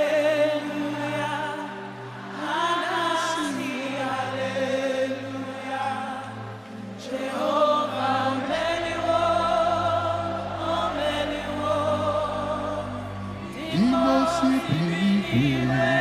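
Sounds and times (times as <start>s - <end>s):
voices singing gospel: 0.0s - 16.0s
keyboard and bass chords: 8.8s - 16.0s.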